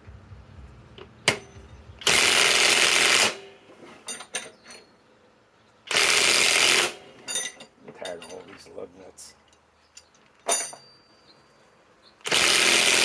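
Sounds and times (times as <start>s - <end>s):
impact wrench hammering: 0.0s - 3.5s.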